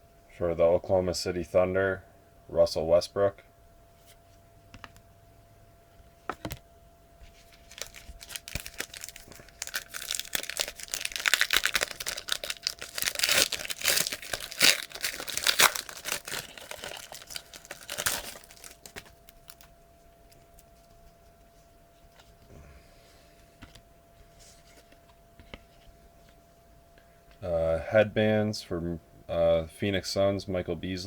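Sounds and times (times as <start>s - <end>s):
wrapper tearing and crinkling: 7.5s - 19.7s.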